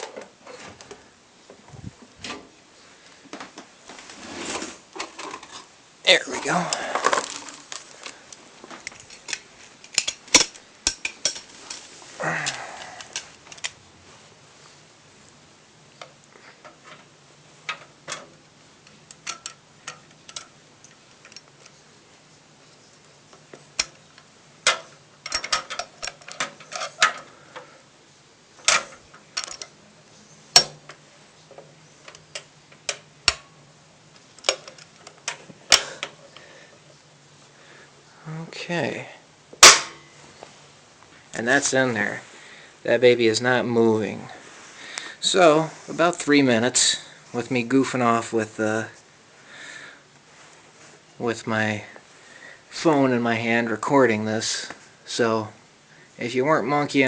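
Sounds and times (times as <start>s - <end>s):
faint steady low hum: 0.0s - 57.0s
clicks and knocks of pc parts: 8.8s - 11.5s, 34.4s - 36.2s.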